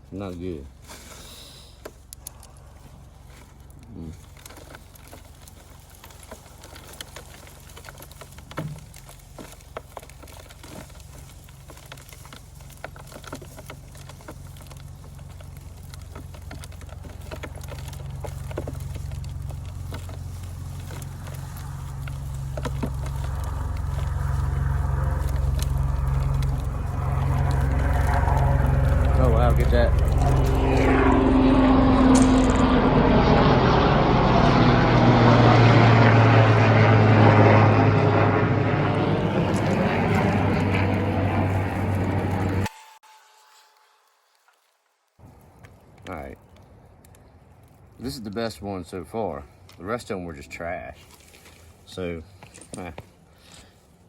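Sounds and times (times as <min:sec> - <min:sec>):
light crackles and taps: 0:01.8 - 0:31.3, 0:45.2 - 0:48.4, 0:49.6 - 0:49.9
low engine drone: 0:01.8 - 0:44.0.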